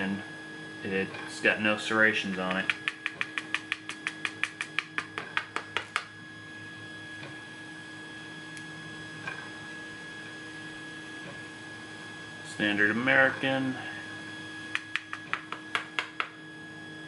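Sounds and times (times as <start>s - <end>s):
steady machine hum: 0.0s - 17.0s
quick run of light clicks: 2.6s - 5.6s.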